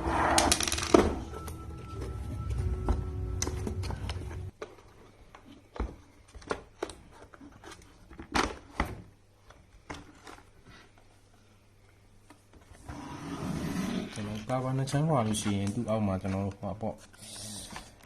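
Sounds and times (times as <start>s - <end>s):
background music: 0.0s - 4.5s.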